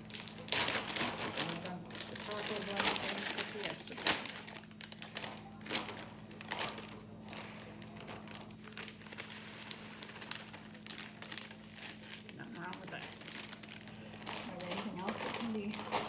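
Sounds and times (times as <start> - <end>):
plastic packages crinkling: 0.0 - 16.0.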